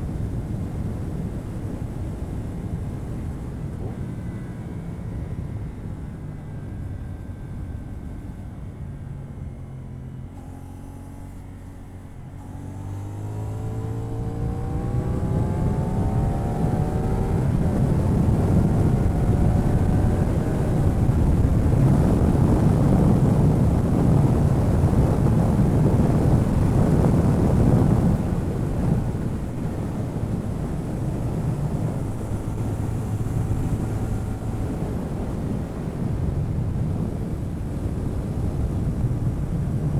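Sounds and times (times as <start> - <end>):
wind rush on microphone: 0.0 - 9.9, 12.4 - 39.9
motorcycle engine accelerating: 9.0 - 39.9.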